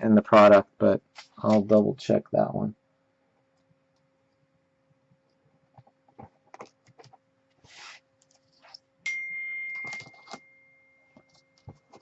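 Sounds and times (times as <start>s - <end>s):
electronic chime tone: 9.1s - 11.6s.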